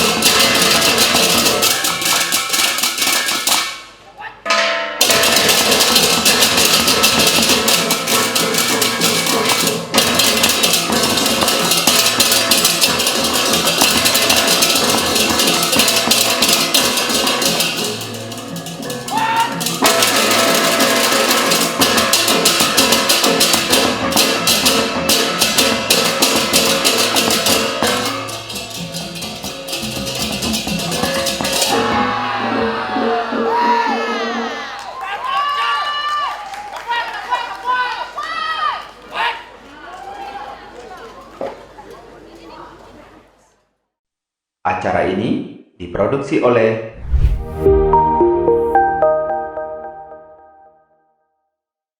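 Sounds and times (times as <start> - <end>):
gamelan ensemble playing: 47.4 - 50.7.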